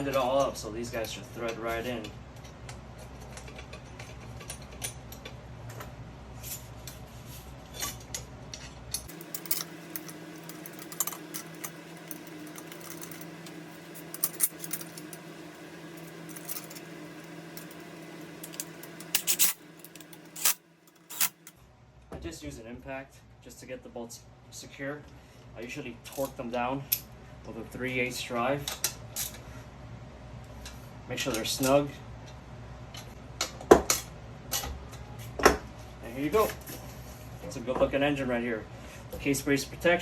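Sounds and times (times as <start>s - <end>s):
metallic clicks of bolts and tools: 7.8s - 21.5s.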